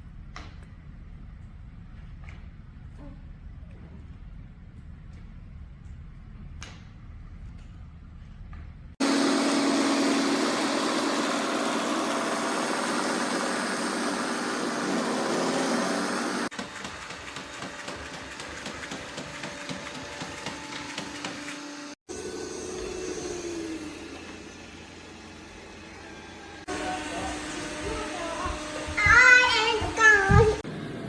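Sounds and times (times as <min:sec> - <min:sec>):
robot vacuum whirring hum: 0:09.0 - 0:16.5, 0:22.1 - 0:30.6.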